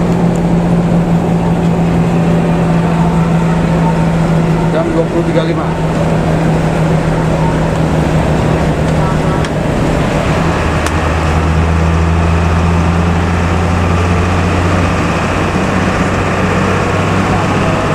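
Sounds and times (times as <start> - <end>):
bus engine drone: 0.0 - 17.9
road noise: 0.0 - 17.9.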